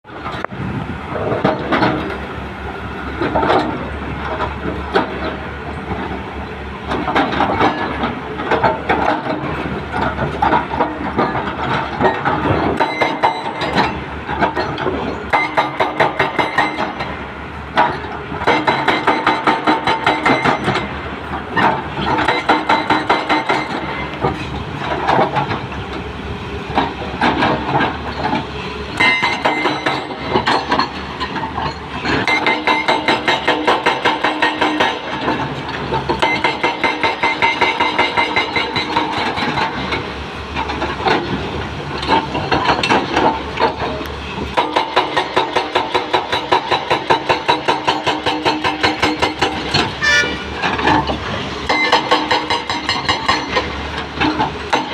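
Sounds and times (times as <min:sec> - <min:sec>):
excavator engine running: 0:00.1 - 0:54.9
hydraulic breaker hammering: 0:07.0 - 0:17.1, 0:17.7 - 0:20.9, 0:21.5 - 0:24.4, 0:29.0 - 0:40.1, 0:42.0 - 0:54.9.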